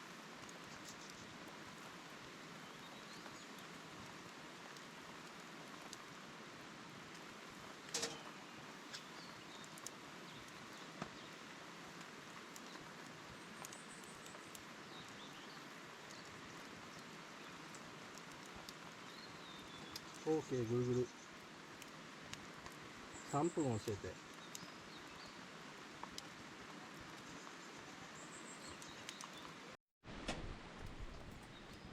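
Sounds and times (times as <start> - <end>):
faint rain hiss: 0.0 - 31.9
sharp pops and ticks: 7.9 - 11.4, 12.0 - 22.9, 23.6 - 25.3, 26.0 - 26.4, 28.6 - 29.6.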